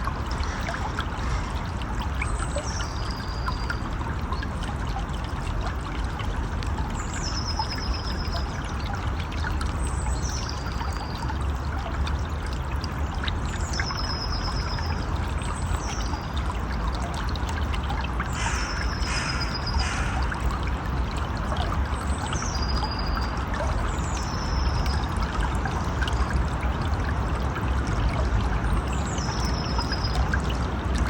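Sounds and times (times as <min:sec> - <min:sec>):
stream running over rocks: 0:00.0 - 0:31.0
short high bird call: 0:18.4 - 0:20.4.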